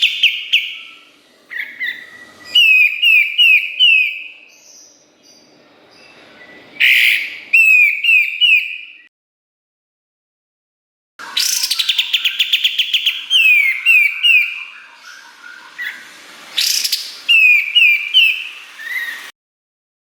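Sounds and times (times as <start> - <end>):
bird down-slurred whistles: 0.0 - 4.6, 6.0 - 9.1, 11.2 - 19.3.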